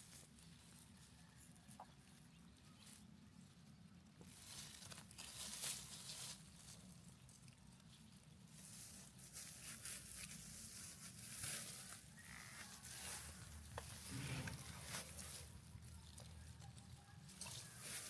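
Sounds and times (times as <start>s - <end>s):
rustling: 4.0s - 18.0s.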